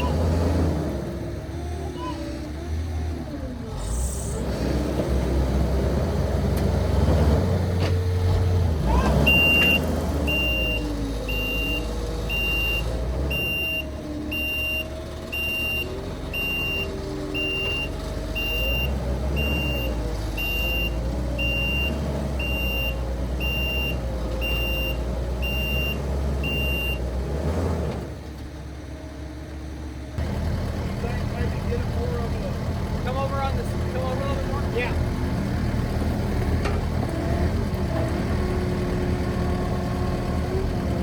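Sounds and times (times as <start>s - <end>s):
skid steer engine under load: 0.0s - 41.0s
backup alarm beeping: 9.3s - 27.0s.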